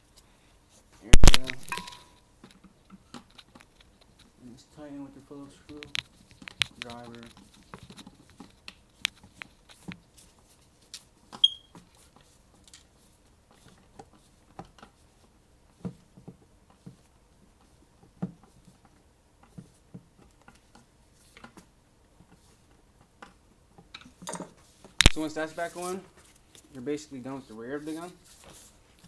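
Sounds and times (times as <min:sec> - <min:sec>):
sharp metallic click: 0:01.2 - 0:02.0, 0:25.0 - 0:25.6
screwdriver and parts clicking: 0:01.2 - 0:02.1, 0:25.0 - 0:25.6.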